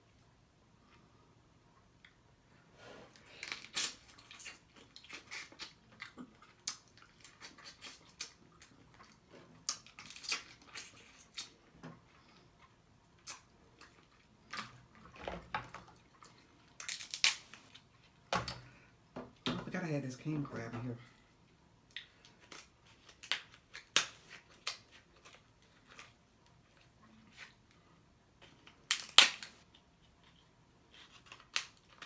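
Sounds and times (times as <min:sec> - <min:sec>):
lip smacks and chewing: 0:03.4 - 0:15.1, 0:21.9 - 0:26.1.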